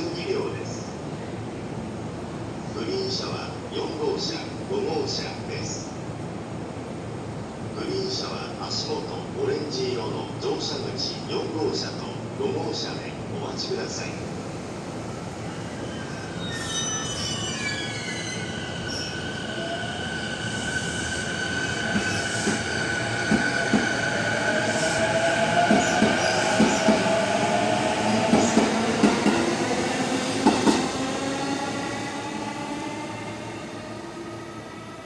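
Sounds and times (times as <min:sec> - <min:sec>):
train squealing: 0:14.5 - 0:35.0.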